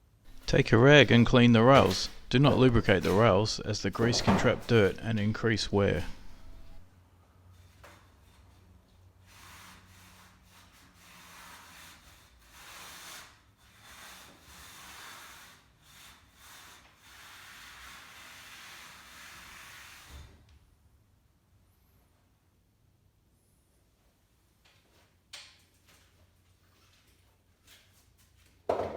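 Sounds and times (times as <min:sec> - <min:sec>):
rag rubbing metal rail: 0:00.3 - 0:06.8.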